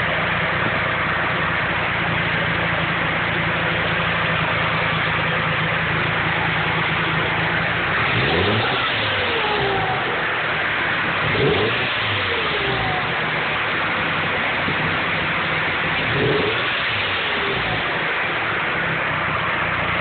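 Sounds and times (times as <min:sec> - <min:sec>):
turbocharged engine idling with hiss: 0:00.0 - 0:20.0
engine revving blips: 0:08.0 - 0:10.3, 0:11.2 - 0:13.2.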